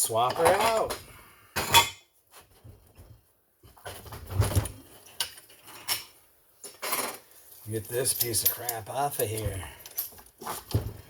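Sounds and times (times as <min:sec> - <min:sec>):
metallic clinks and knocks: 0:08.0 - 0:10.3.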